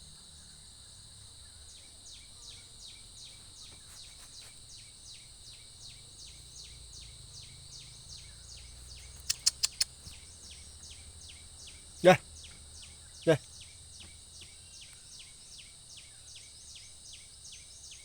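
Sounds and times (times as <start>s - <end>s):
insects buzzing and chirping: 0.0s - 18.0s
sharp clicks: 9.2s - 10.2s.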